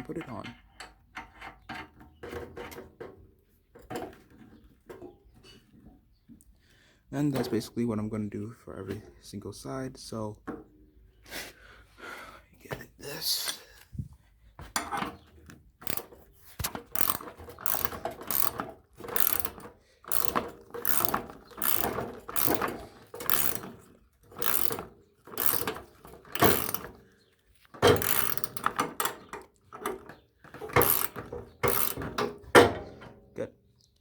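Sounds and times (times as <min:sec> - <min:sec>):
socket ratchet clicking: 0:15.8 - 0:16.1, 0:16.9 - 0:23.7, 0:24.4 - 0:26.9, 0:27.9 - 0:28.9, 0:30.8 - 0:32.0.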